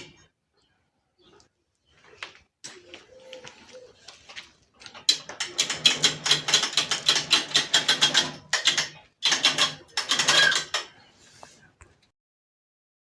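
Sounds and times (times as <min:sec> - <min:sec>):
hose reel clicking: 0:05.0 - 0:10.9.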